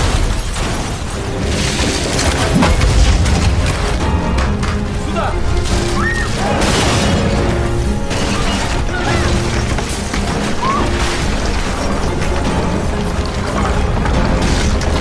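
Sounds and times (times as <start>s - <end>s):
booms and crashes: 0.0s - 4.7s, 5.6s - 12.5s
dramatic music: 0.0s - 15.0s.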